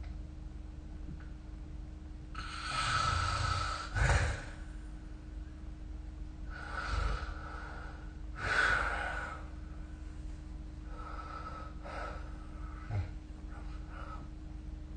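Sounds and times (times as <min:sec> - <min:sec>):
person snoring: 0:02.4 - 0:04.6, 0:06.5 - 0:09.5.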